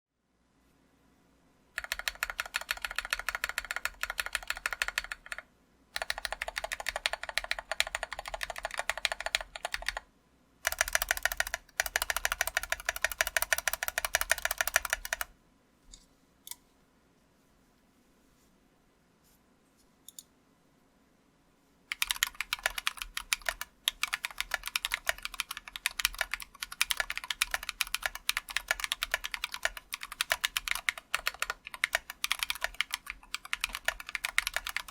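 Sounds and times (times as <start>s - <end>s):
mechanical keyboard typing: 1.8s - 15.3s, 21.9s - 34.9s.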